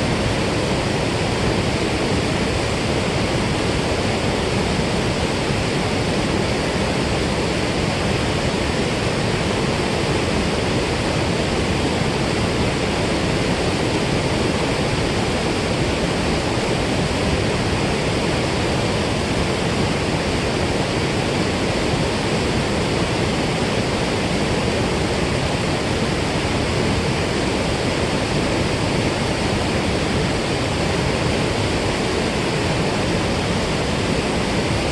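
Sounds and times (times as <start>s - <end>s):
water rushing through spillway: 0.0s - 34.9s.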